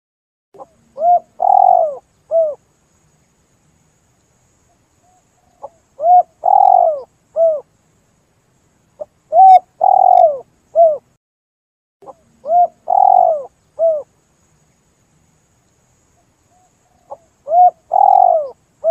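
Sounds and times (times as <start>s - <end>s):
dove cooing: 0.6s - 2.6s, 5.6s - 7.7s, 9.0s - 11.1s, 12.0s - 14.1s, 16.5s - 18.9s.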